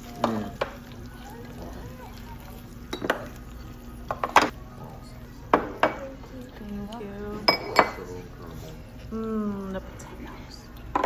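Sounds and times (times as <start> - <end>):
dishes and cutlery clinking: 2.2 - 4.6, 5.4 - 9.2.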